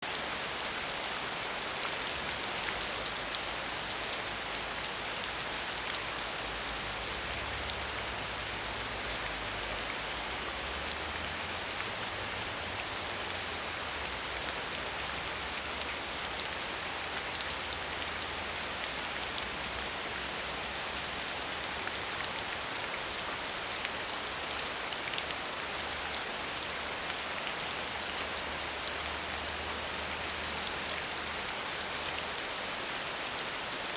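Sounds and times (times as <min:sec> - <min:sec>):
rain pattering: 0:00.0 - 0:33.9.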